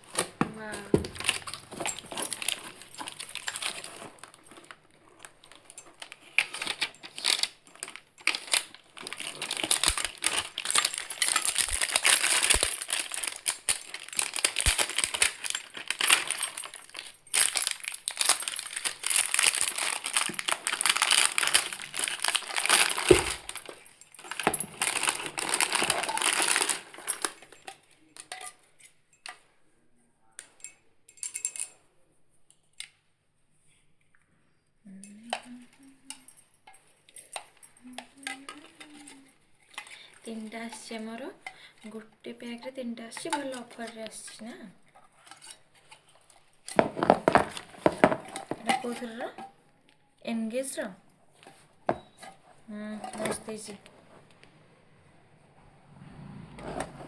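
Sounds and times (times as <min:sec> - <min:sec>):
packaging crinkling and rustling: 0:00.0 - 0:28.4, 0:45.1 - 0:49.5
small clicks and crackles: 0:00.6 - 0:28.6.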